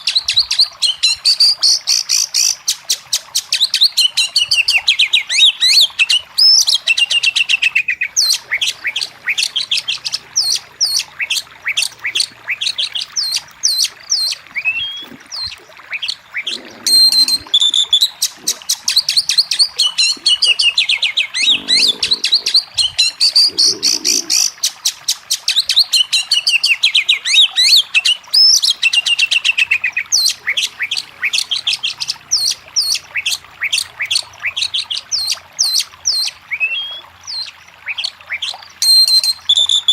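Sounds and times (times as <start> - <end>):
bird singing whistled notes: 34.8 - 39.9.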